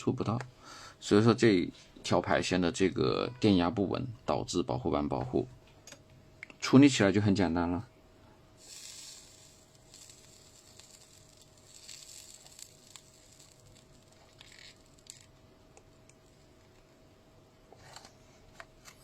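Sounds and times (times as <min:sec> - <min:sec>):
soft hissing rustles: 0:08.6 - 0:15.3.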